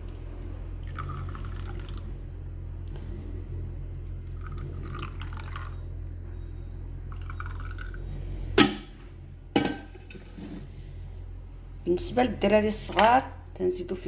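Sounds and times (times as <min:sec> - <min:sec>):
juice trickling into glass: 0:00.8 - 0:02.1, 0:04.3 - 0:05.8, 0:07.1 - 0:08.0.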